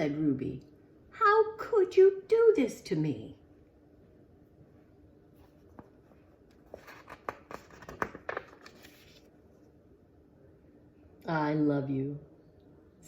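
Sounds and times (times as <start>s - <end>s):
book pages rustling and turning: 5.3s - 9.7s.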